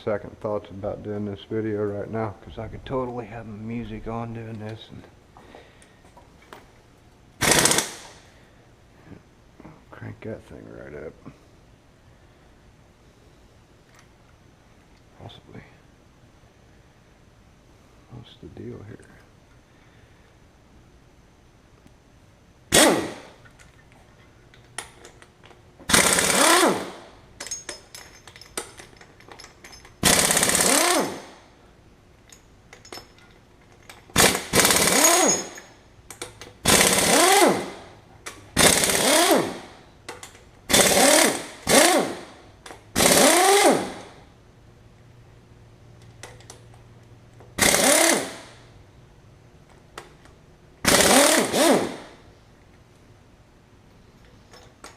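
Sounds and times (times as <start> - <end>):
impact wrench hammering: 7.4 - 8.2, 25.9 - 31.4, 34.1 - 37.8, 38.6 - 44.2, 47.6 - 48.6, 50.8 - 52.2.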